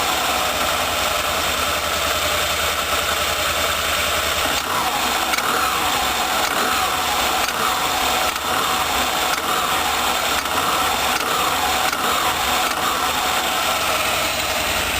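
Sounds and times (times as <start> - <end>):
jet ski engine running: 0.0 - 14.9.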